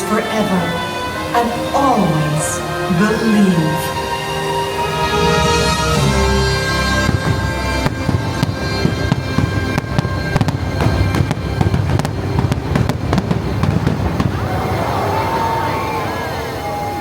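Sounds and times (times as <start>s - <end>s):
orchestral music: 0.0s - 17.0s
fireworks cracking and popping: 6.9s - 14.8s.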